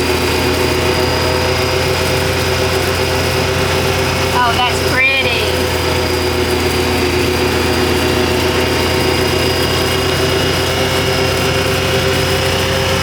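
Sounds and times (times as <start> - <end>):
vehicle engine droning: 0.0 - 13.0
high whine: 4.2 - 6.3.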